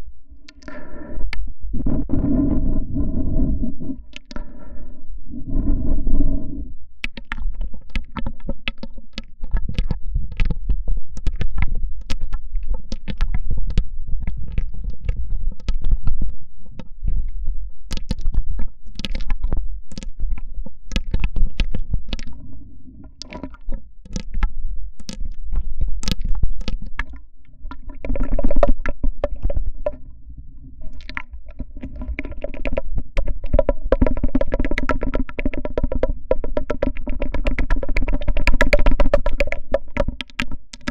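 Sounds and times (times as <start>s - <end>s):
low rumble: 0.0s - 7.0s
sharp clicks and taps: 23.2s - 27.2s, 30.9s - 40.9s.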